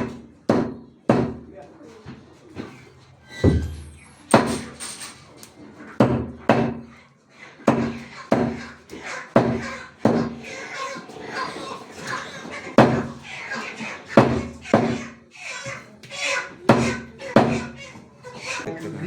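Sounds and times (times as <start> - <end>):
cleaver chopping on a block: 0.0 - 1.5, 6.0 - 6.8, 7.7 - 8.6, 9.4 - 10.4, 12.8 - 13.2, 14.2 - 15.0, 16.7 - 17.8.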